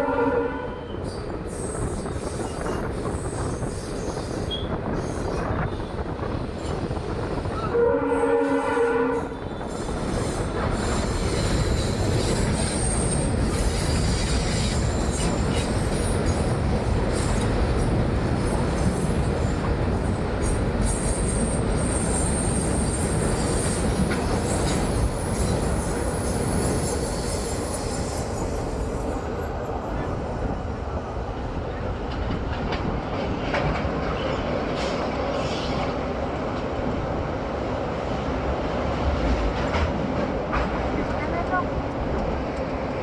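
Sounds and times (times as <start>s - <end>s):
locomotive horn blast: 0.0s - 0.9s, 7.7s - 9.4s
train wheels rumbling on rail: 0.0s - 43.0s.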